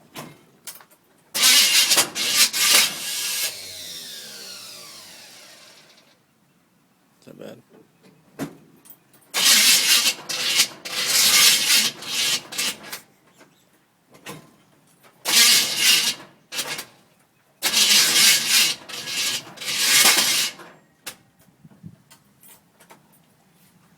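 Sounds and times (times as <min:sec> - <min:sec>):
starter cranking engine: 0:01.4 - 0:06.2, 0:17.6 - 0:20.6.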